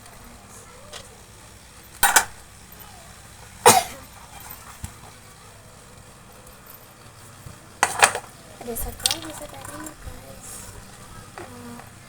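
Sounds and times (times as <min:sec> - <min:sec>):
person coughing: 0:03.7 - 0:04.0.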